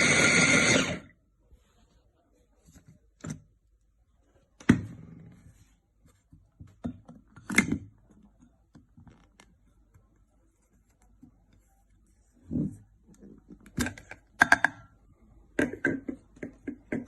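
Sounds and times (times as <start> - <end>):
hard objects knocking and clunking: 15.6 - 17.0.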